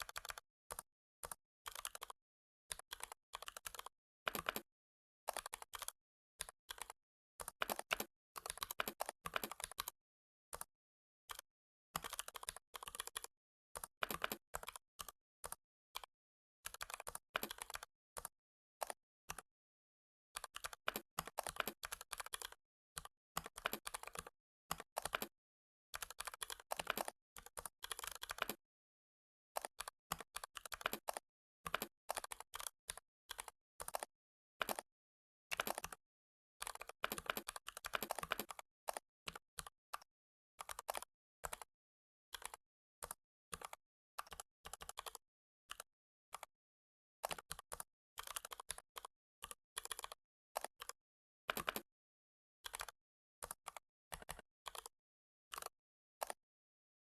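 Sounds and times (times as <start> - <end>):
computer keyboard typing: 0.1 - 2.2, 2.9 - 4.7, 5.3 - 9.9, 12.0 - 15.6, 16.6 - 19.4, 20.4 - 25.3, 26.0 - 28.6, 29.6 - 34.9, 35.6 - 36.0, 36.6 - 40.0, 40.6 - 41.7, 42.3 - 45.2, 48.2 - 49.1, 49.8 - 51.9, 52.6 - 54.9, 55.5 - 56.4.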